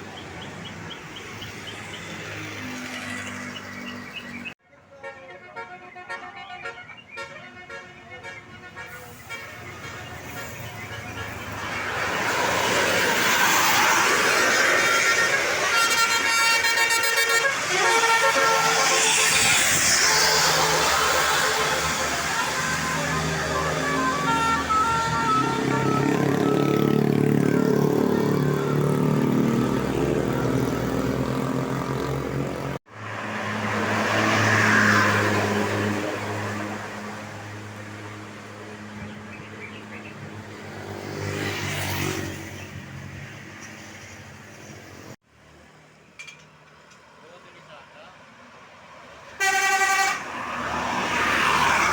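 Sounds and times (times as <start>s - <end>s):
vehicle noise rushing: 0.0s - 4.6s, 9.0s - 45.8s, 48.5s - 51.9s
musical air horn: 5.0s - 11.5s, 14.8s - 30.8s, 49.4s - 50.5s.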